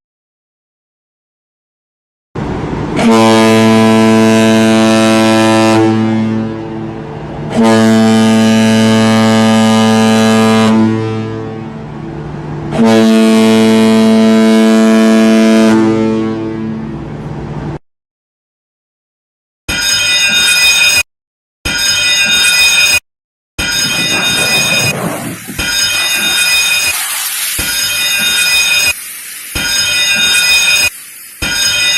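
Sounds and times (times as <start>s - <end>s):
ship's horn blasts: 2.4s - 17.8s.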